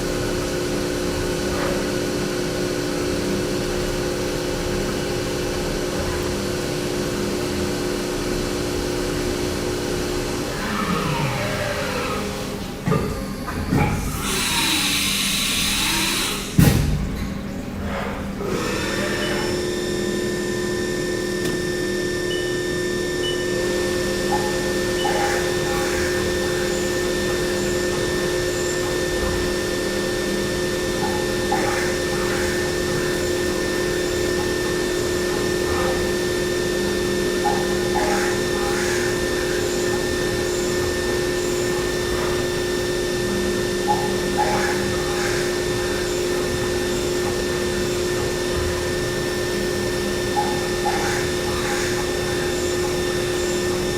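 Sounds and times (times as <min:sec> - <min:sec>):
milling machine whining: 0:06.7 - 0:53.9
high-pitched machine squeals: 0:10.5 - 0:12.6, 0:14.0 - 0:16.5, 0:17.9 - 0:53.9.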